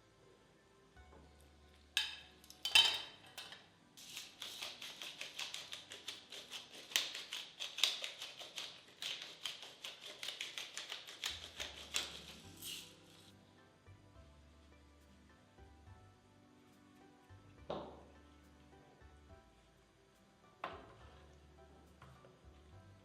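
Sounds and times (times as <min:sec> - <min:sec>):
metal utensil clinking on cookware: 0:02.0 - 0:03.7
utensil scraping: 0:04.0 - 0:13.3.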